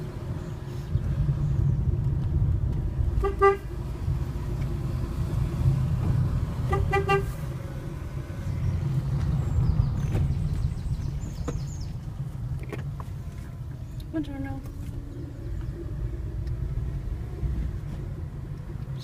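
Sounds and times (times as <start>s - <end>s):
car engine and tyres rumble: 0.0s - 19.0s
car horn toot: 3.2s - 3.7s, 6.6s - 7.4s.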